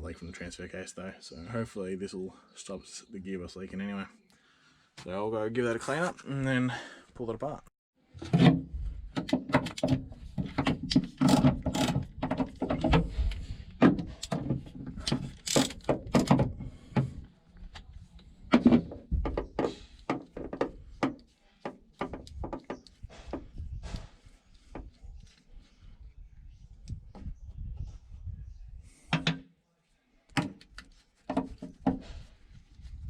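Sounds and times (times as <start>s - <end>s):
hand tools and metal parts clunking: 8.1s - 17.2s.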